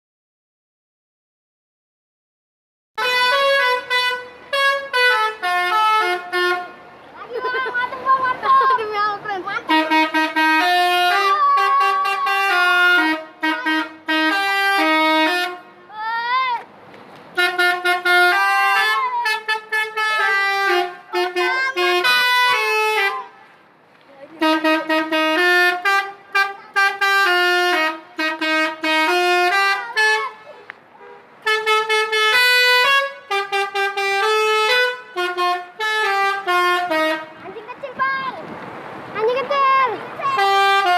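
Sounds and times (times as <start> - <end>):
multi-tone bus horn melody: 3.0 - 6.9, 9.5 - 15.8, 17.3 - 23.4, 24.4 - 37.4, 40.2 - 40.9.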